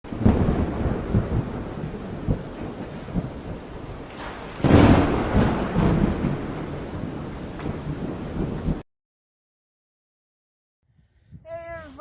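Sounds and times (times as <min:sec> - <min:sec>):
wind buffeting microphone: 0:00.1 - 0:08.8.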